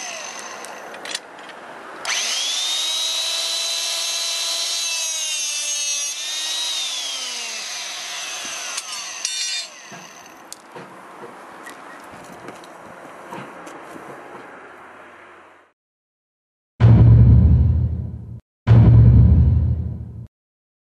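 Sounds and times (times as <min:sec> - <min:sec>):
rebar cutter motor whining: 0:00.0 - 0:01.1.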